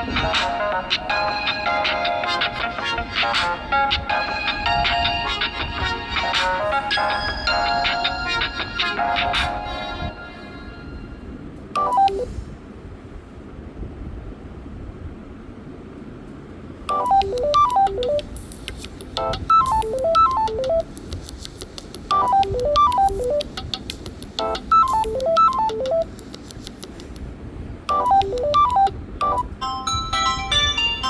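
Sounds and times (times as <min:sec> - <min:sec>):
phone ringtone melody: 0:00.0 - 0:10.8, 0:11.8 - 0:12.3, 0:16.9 - 0:18.3, 0:19.2 - 0:20.9, 0:22.1 - 0:23.6, 0:24.4 - 0:26.1, 0:27.9 - 0:31.0
second ringtone: 0:11.8 - 0:12.3, 0:16.9 - 0:18.3, 0:19.2 - 0:20.8, 0:22.1 - 0:23.6, 0:24.4 - 0:26.1, 0:27.9 - 0:31.0.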